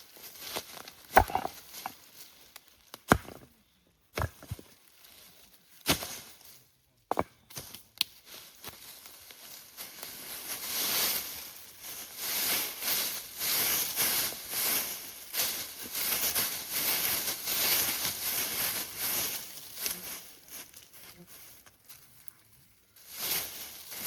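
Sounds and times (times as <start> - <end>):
footsteps through leaf litter: 0.0 - 2.6, 4.7 - 6.6, 7.6 - 24.0.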